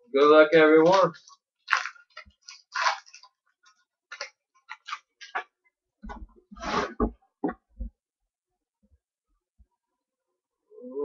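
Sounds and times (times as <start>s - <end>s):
card packaging crinkling: 0.9s - 5.4s.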